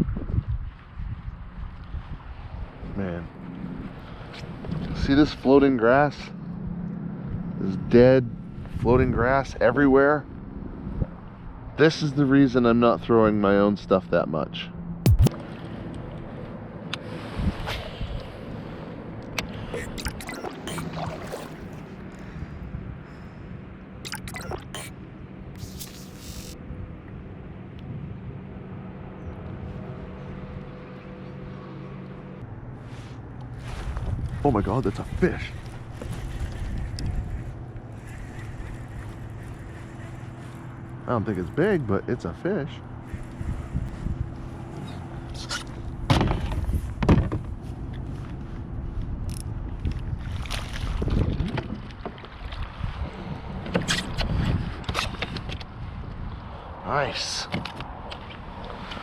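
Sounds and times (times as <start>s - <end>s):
water splashing: 19.8s - 22.0s, 24.1s - 24.9s
motor humming: 25.6s - 26.6s, 35.6s - 41.0s.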